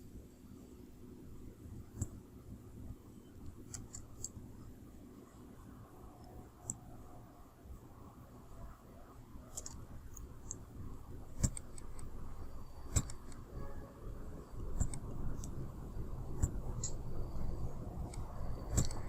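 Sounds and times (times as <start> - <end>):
low background hum: 0.0 - 19.0
computer mouse clicking: 3.4 - 4.4, 6.2 - 6.8, 9.5 - 10.7, 11.3 - 13.5, 14.4 - 19.0.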